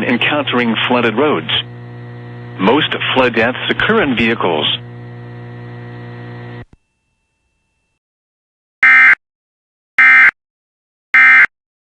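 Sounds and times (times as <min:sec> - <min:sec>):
steady hum: 0:00.0 - 0:06.7.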